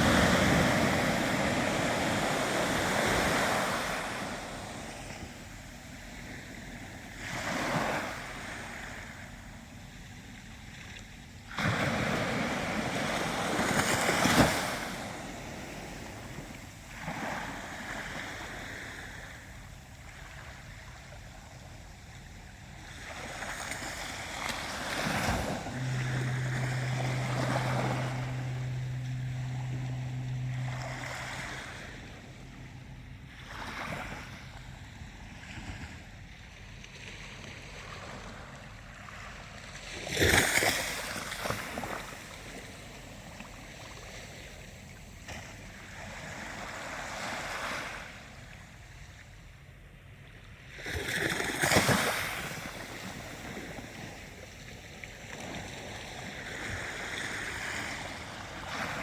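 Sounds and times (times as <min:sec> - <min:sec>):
low steady hum: 0:00.0 - 0:39.8
ocean waves washing in: 0:00.0 - 0:44.7
wave crash: 0:24.7 - 0:32.2.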